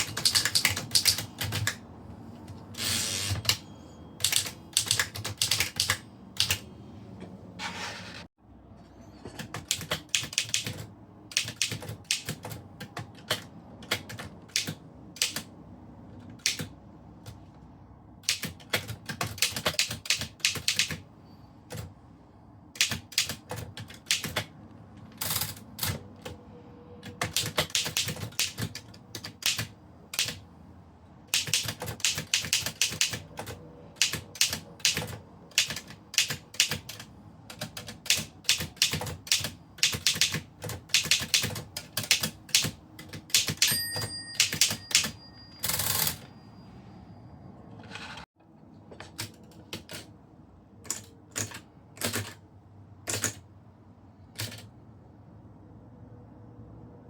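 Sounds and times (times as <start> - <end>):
typewriter carriage return: 0.0 - 1.8, 2.6 - 6.7, 9.3 - 15.5, 18.2 - 21.0, 22.8 - 26.4, 27.0 - 30.4, 31.3 - 46.3, 50.8 - 52.4, 53.1 - 53.4, 54.4 - 54.7
typewriter key strikes: 31.4 - 46.2
typewriter bell ringing: 43.4 - 46.8.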